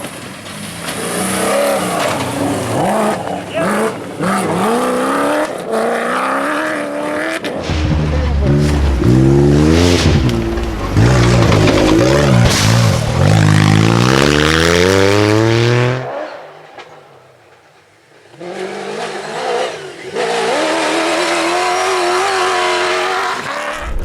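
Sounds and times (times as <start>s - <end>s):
engine accelerating hard: 0.8s - 16.2s
engine at high revs: 8.4s - 16.5s, 18.4s - 23.9s.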